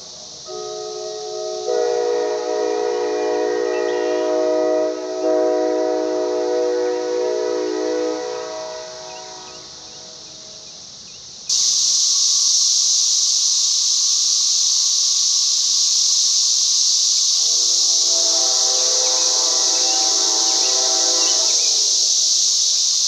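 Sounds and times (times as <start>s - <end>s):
loud steady hiss: 0.0s - 23.0s
train horn chord: 0.4s - 10.7s, 17.4s - 22.4s.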